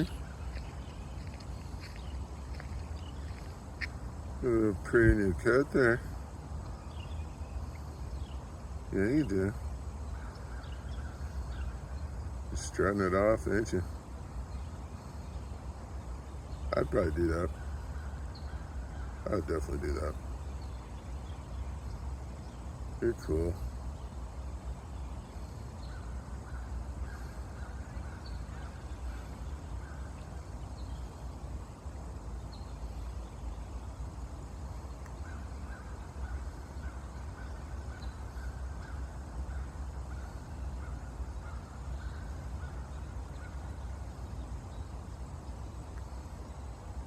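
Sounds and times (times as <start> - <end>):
steady low rumble: 0.0 - 12.6.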